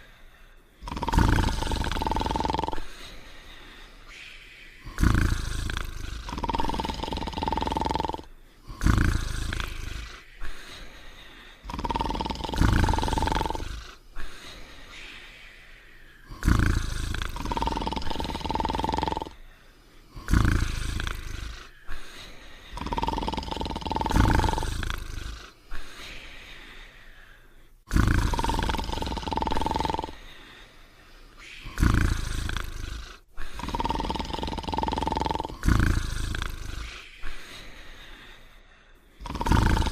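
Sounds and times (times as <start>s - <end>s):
loud rumbling cartoon snore: 0.8s - 2.9s, 4.9s - 10.3s, 11.6s - 14.0s, 16.3s - 19.4s, 20.2s - 21.8s, 22.7s - 25.6s, 27.9s - 30.3s, 31.6s - 37.1s, 39.2s - 39.9s
high steady whistle: 4.0s - 4.9s.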